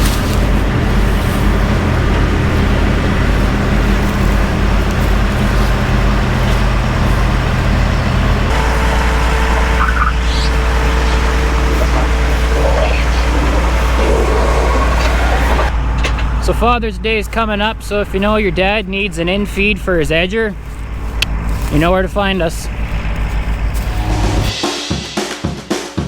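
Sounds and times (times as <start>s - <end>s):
diesel engine running under load: 0.0s - 24.5s.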